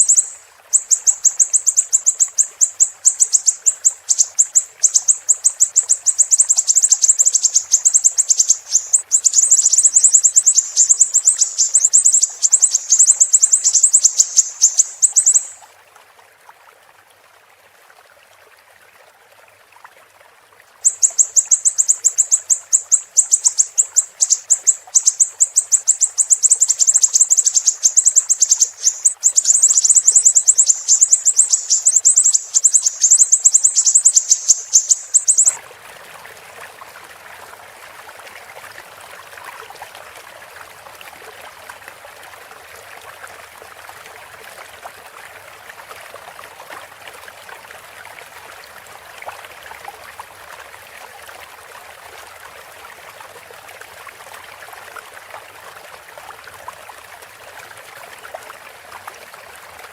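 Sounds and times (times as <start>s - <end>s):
bird singing high-pitched chirps: 0.0s - 15.6s, 20.9s - 35.6s
faint running water: 0.0s - 59.9s.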